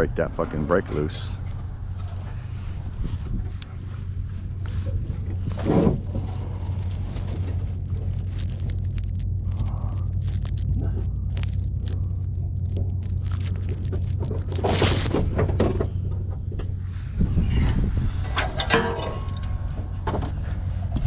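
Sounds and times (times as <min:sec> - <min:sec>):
low engine drone: 0:00.0 - 0:21.0
rough scraping burst: 0:02.2 - 0:15.9
metal clanks and knocks: 0:15.2 - 0:16.8, 0:17.6 - 0:21.0.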